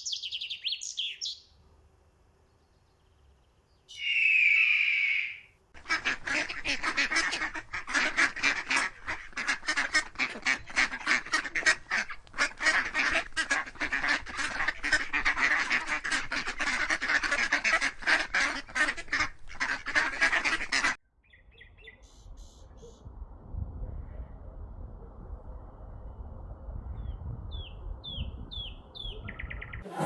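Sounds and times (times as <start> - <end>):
waterfowl calling: 3.9 - 21.0.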